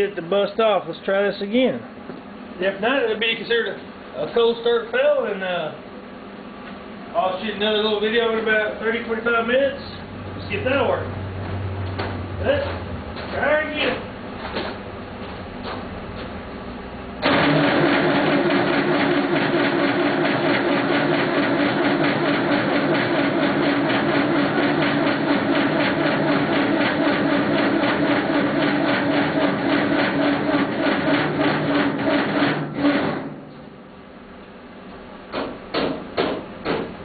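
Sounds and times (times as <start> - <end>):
diesel engine cranking by starter: 17.2 - 33.4.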